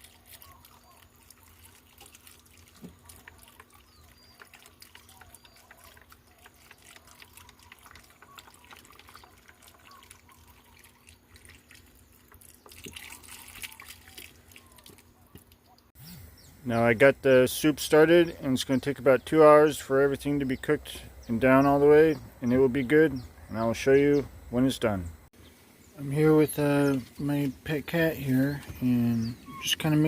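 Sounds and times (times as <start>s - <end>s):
broth pouring into a pot: 0.0s - 14.9s.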